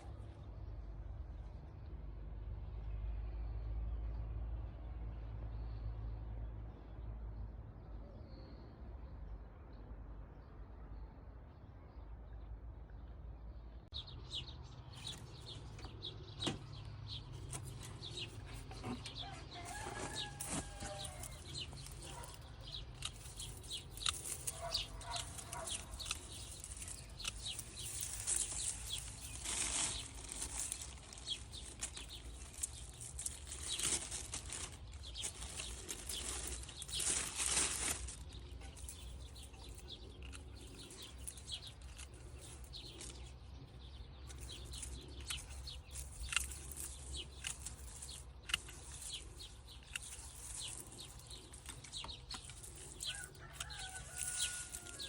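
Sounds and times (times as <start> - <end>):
leafy stems rustling: 16.8 - 55.0
clicks and snips: 17.4 - 43.4, 44.2 - 55.0.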